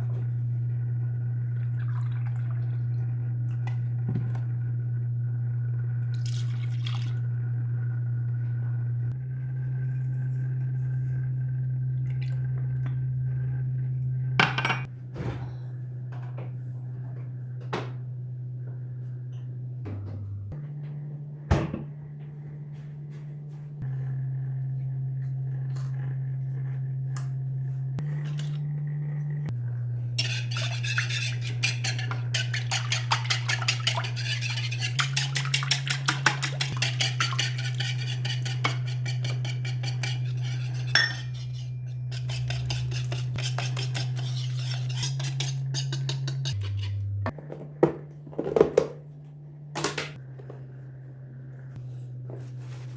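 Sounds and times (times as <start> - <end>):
utensil beating in mixing bowl: 30.2 - 47.0.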